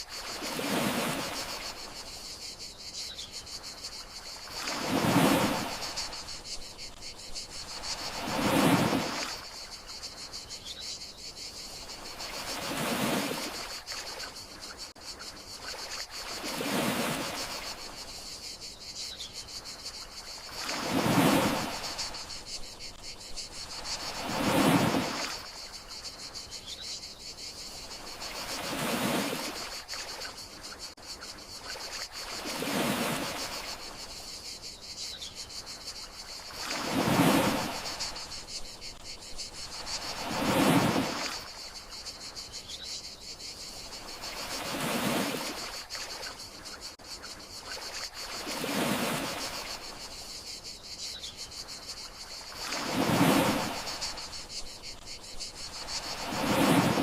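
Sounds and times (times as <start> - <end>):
sea waves washing ashore: 0.0 - 2.2, 3.8 - 10.1, 11.7 - 14.3, 15.6 - 18.2, 19.8 - 26.2, 27.8 - 30.4, 31.6 - 34.2, 36.2 - 42.2, 43.8 - 46.6, 47.6 - 50.2, 52.0 - 57.0
crickets chirring: 0.0 - 57.0.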